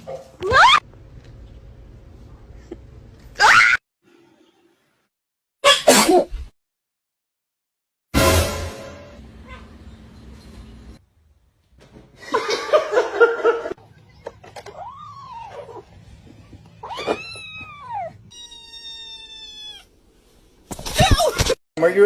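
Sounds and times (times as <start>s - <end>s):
cat meowing and yowling: 14.6s - 15.9s, 16.8s - 19.9s.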